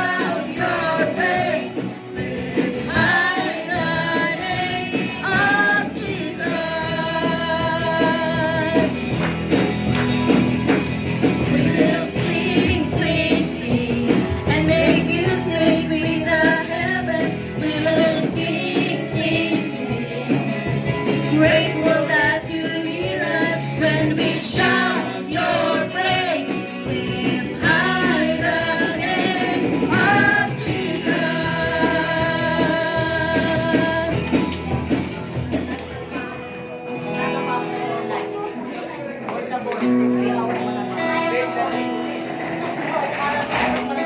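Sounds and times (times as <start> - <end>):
person singing over a band: 0.0 - 9.2, 11.3 - 34.5.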